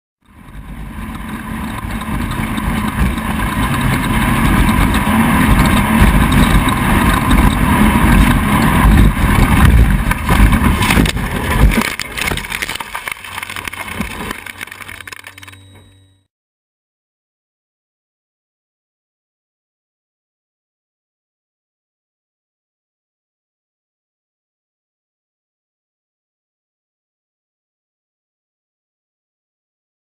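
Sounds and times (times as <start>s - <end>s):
low steady hum: 0.2s - 16.2s
off-road vehicle engine running hard: 0.2s - 16.2s.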